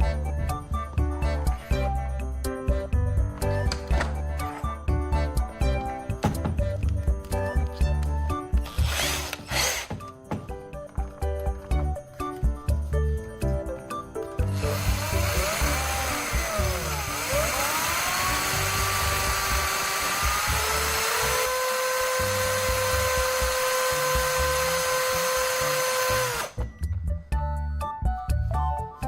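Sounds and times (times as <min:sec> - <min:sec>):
handheld power tool running: 0:08.6 - 0:10.1, 0:14.4 - 0:26.6.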